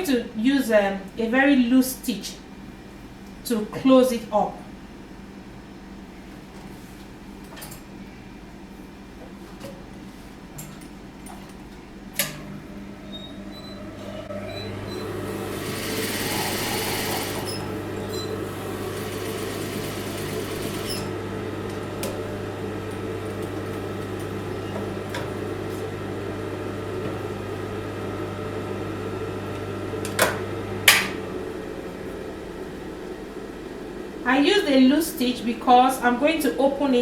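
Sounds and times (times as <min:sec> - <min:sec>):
sewing machine running: 0:13.0 - 0:35.4.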